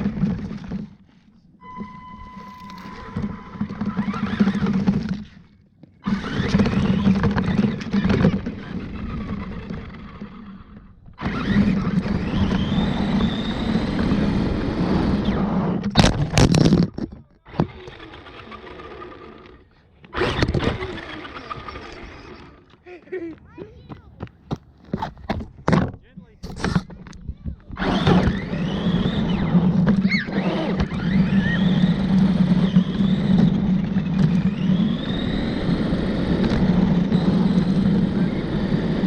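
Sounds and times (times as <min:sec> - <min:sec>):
truck rattling over ground: 0:00.0 - 0:15.2
toy truck motor hum: 0:00.0 - 0:22.8, 0:26.4 - 0:39.0.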